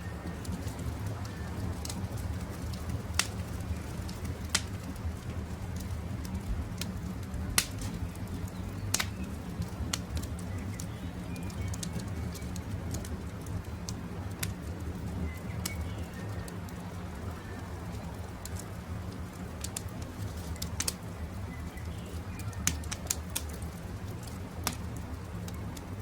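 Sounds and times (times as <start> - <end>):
campfire crackling and popping: 0.0 - 26.0
steady low rumble: 0.0 - 26.0
faint birds calling: 19.6 - 23.8.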